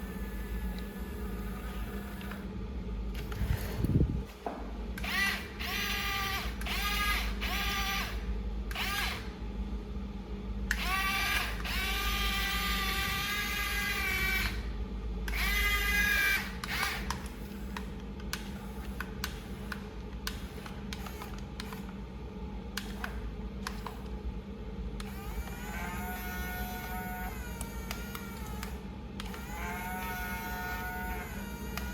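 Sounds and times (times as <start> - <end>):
steady low hum: 0.0 - 31.9
small electric motors whirring: 5.0 - 9.3, 10.7 - 14.7, 15.3 - 21.9, 25.0 - 31.9.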